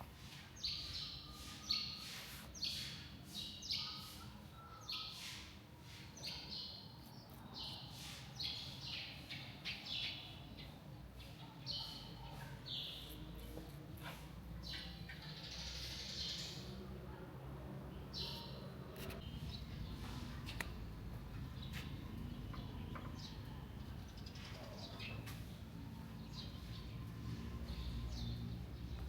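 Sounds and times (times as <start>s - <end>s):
small birds chirping: 0.6s - 16.9s, 18.0s - 29.0s.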